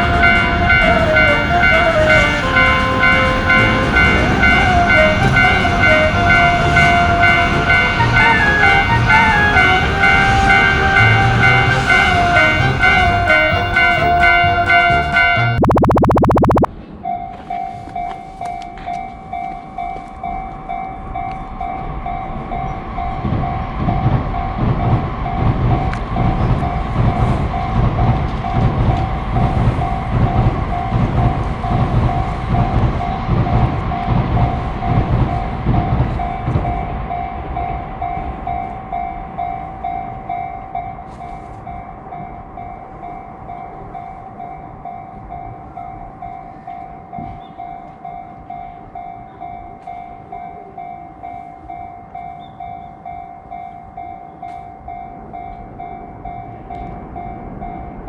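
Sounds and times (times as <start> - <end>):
train rumbling past: 0.0 - 15.8, 16.6 - 58.0
level-crossing warning bell: 0.0 - 15.9, 16.7 - 58.0.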